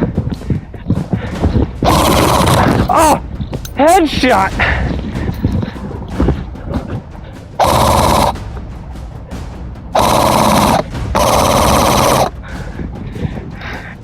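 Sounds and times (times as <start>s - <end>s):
simulated automatic gunfire: 1.8s - 2.7s, 7.6s - 8.4s, 10.0s - 12.3s.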